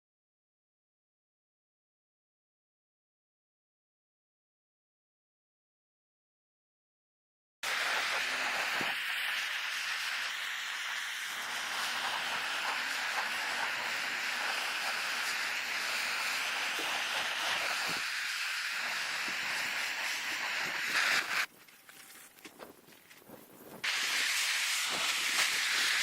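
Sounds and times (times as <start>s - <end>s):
gas torch hissing: 7.6s - 21.5s, 23.8s - 26.0s
wood crackling: 18.8s - 26.0s.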